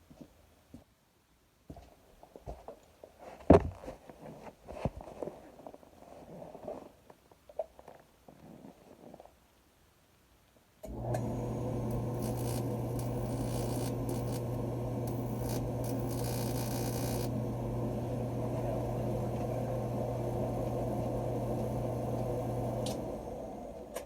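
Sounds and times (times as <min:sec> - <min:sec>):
electric motor humming: 0:10.9 - 0:23.9.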